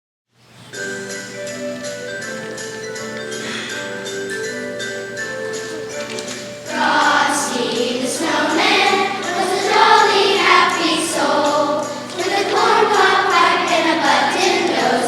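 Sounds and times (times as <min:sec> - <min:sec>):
held instrumental notes: 0:00.7 - 0:15.0
choir singing: 0:05.2 - 0:15.0.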